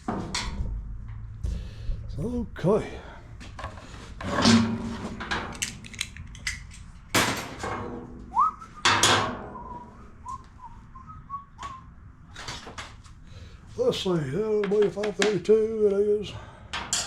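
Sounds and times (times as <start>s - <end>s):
tools clattering: 3.6s - 8.1s, 16.7s - 17.0s
tools clicking and knocking: 5.2s - 7.7s
short rising whistle-like tone: 8.3s - 8.9s, 9.5s - 11.9s.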